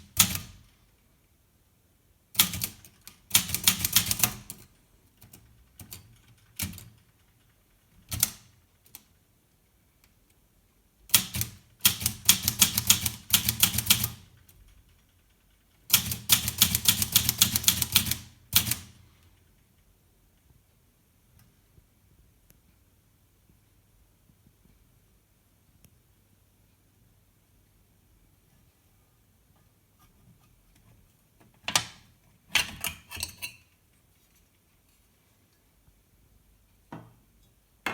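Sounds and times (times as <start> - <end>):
typewriter clacking: 2.4 - 4.7, 11.1 - 14.4, 15.9 - 19.0
manual typewriter key strikes: 11.1 - 14.4.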